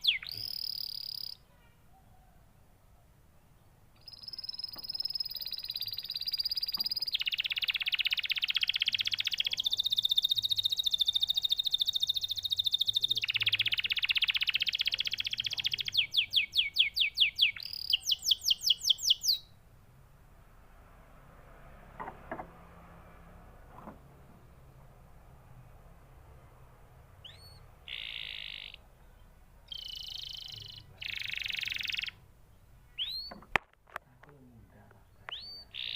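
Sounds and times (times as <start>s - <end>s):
canary singing trills: 0.0s - 2.4s, 3.6s - 19.6s, 27.1s - 33.6s, 35.0s - 35.9s.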